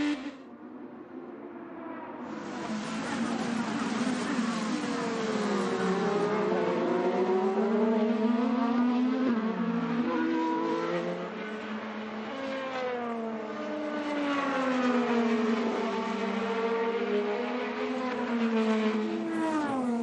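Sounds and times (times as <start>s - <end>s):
racing car engine revving: 2.4s - 11.4s.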